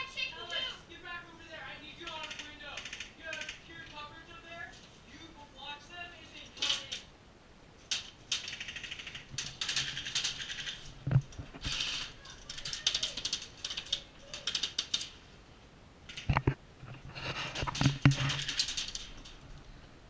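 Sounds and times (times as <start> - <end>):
airsoft guns automatic fire: 2.0 - 3.7, 8.3 - 10.8.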